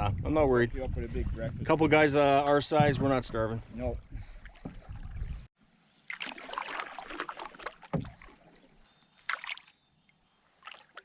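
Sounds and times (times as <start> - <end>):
paddle strokes swishing in water: 2.8 - 9.7
paddle knocking hull thump: 7.8 - 8.3.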